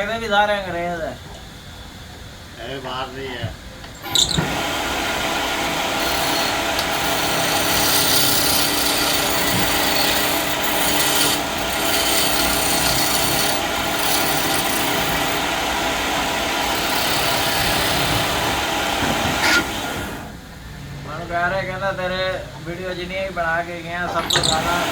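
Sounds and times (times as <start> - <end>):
faint motor hum: 3.5 - 20.6
wood rasping on a lathe: 4.0 - 19.8, 24.1 - 24.9.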